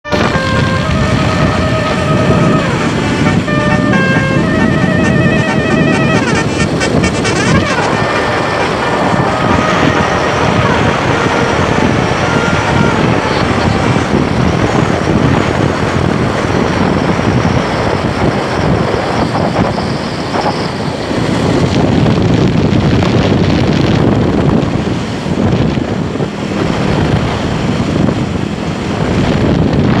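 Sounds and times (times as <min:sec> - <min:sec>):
multi-tone bus horn melody: 0:00.0 - 0:18.2
heavy vehicle road noise: 0:00.0 - 0:30.0
wind on microphone: 0:00.0 - 0:30.0.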